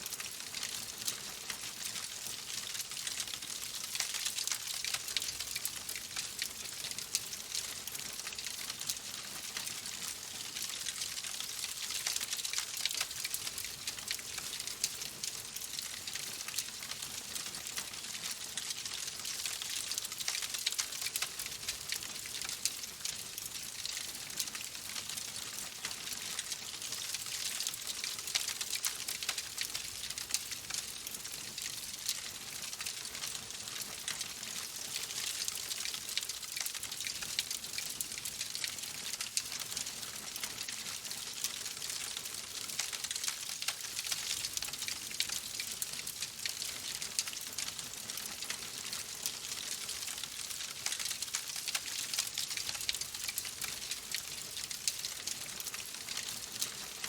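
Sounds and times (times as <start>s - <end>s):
wood fire crackling: 32.0s - 57.0s.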